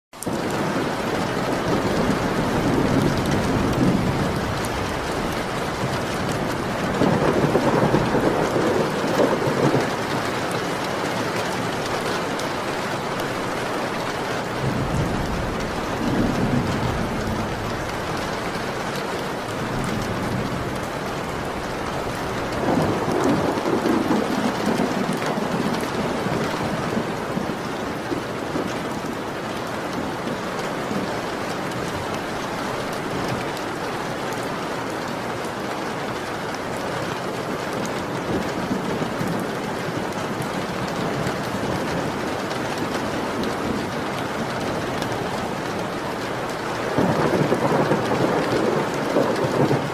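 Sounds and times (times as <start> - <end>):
steady rain: 0.1 - 49.9
rolling thunder: 0.3 - 13.6, 14.4 - 29.3, 38.2 - 49.9.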